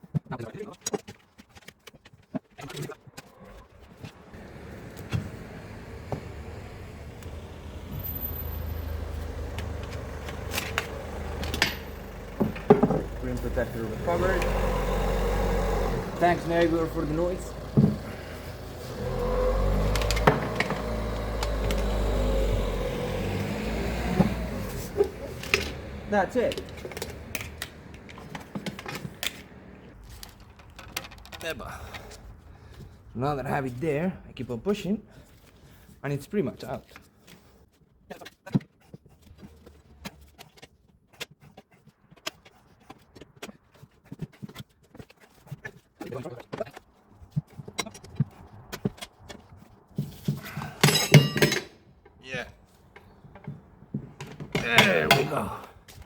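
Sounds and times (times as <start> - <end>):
vehicle engine droning: 4.0 - 30.0
tyre levers clicking and knocking: 9.5 - 13.1, 50.1 - 51.7.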